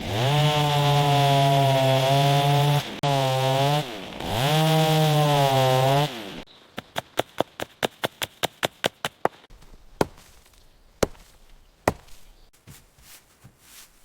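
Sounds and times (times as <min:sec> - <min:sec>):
chainsaw engine revving: 0:00.0 - 0:06.5.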